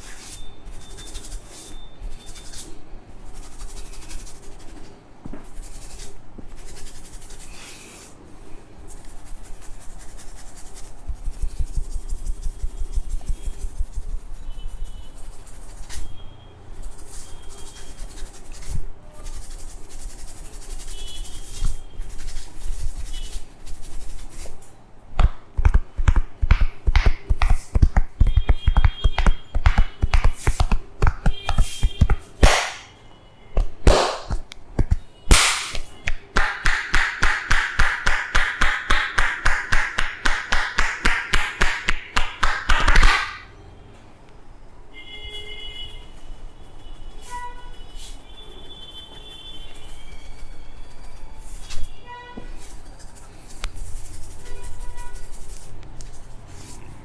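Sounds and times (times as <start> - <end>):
hand slaps and taps on skin: 25.2 - 32.9, 33.6 - 43.4.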